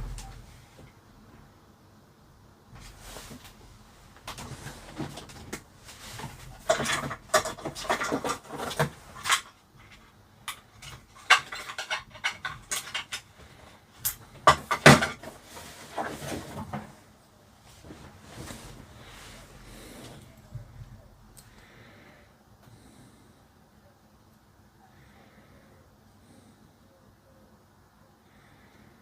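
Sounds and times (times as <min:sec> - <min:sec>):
small parts and tools rattling: 0:04.3 - 0:16.9.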